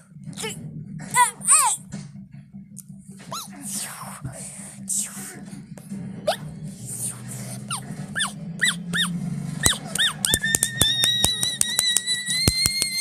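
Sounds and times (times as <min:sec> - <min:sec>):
low hum: 0:00.0 - 0:13.0
high-pitched squeal: 0:06.3 - 0:13.0
high squeaky chirps: 0:07.7 - 0:13.0.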